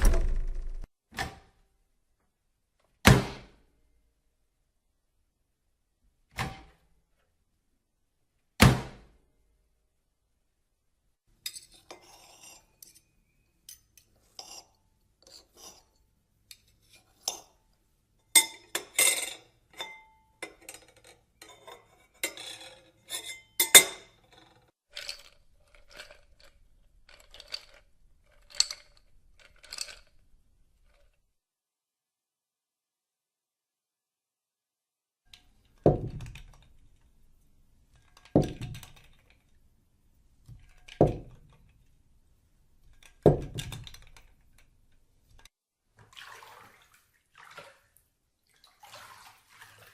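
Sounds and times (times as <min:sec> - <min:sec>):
heavy thuds: 0:00.0 - 0:00.9
dishes and cutlery clattering: 0:11.4 - 0:13.1, 0:18.3 - 0:25.4.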